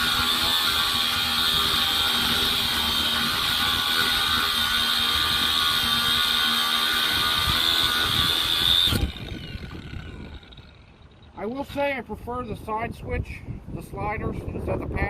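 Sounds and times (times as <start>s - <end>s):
angle grinder whining: 0.0s - 11.9s.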